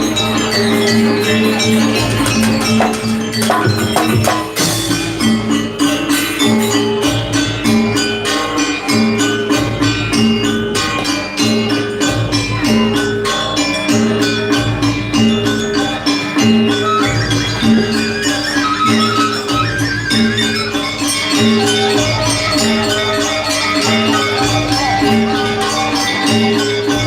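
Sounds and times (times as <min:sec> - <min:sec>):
repeated pitched notes: 0:00.0 - 0:05.6
jingling and clicking percussion: 0:00.0 - 0:27.0.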